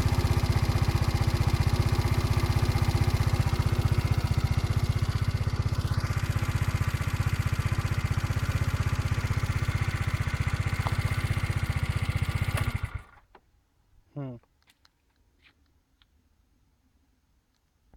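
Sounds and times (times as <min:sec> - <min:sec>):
scooter engine running: 0:00.0 - 0:13.2.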